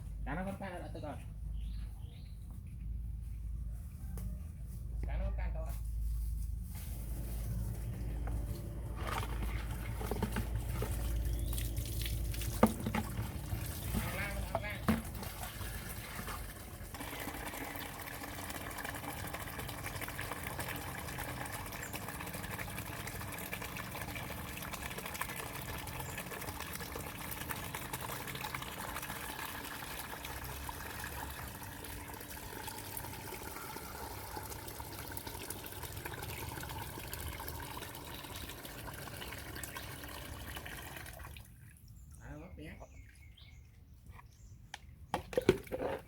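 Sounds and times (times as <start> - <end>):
tap water running into sink: 8.2 - 41.4.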